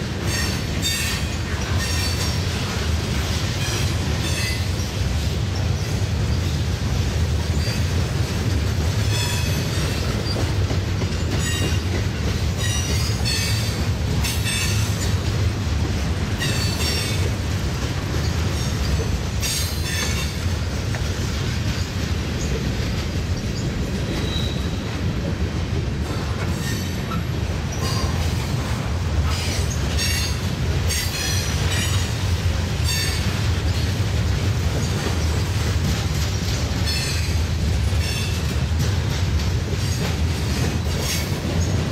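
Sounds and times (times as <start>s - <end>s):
freight train wheels rumbling: 0.0s - 41.9s
wheel squeals: 24.1s - 24.9s.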